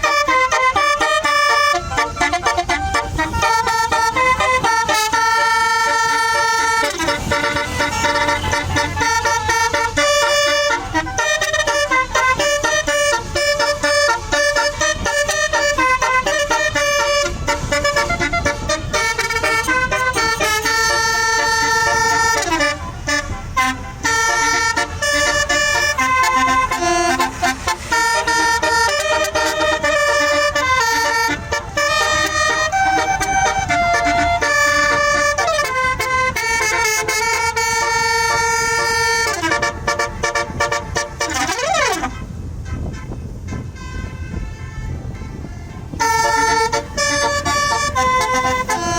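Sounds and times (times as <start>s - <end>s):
musical bus horn melody: 0.0s - 48.9s.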